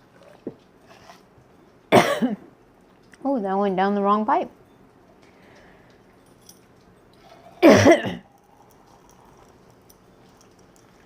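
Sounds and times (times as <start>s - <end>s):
woman coughing: 1.9s - 2.5s, 7.6s - 8.3s.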